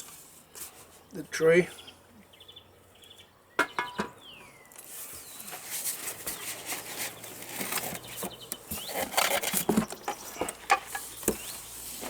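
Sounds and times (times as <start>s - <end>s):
small knocks and scrapes: 0.0s - 1.1s, 3.6s - 12.0s
packaging rustling and rubbing: 4.8s - 12.0s.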